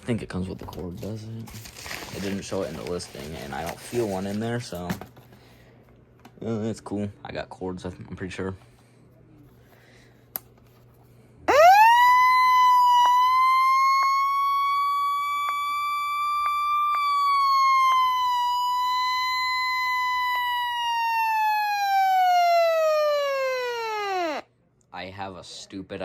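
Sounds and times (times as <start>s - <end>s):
siren wailing: 11.5s - 24.5s.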